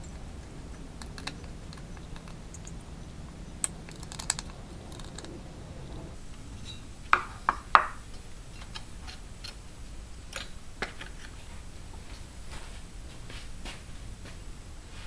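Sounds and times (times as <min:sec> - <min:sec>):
sharp clicks and light knocks: 0:00.0 - 0:06.2.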